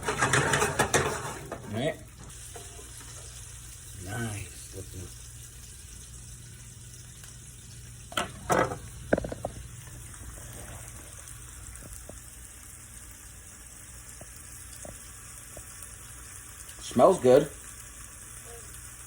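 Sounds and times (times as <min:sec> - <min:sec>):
knocks and clatters: 0:00.0 - 0:01.7
fish sizzling in a pan: 0:00.0 - 0:19.0.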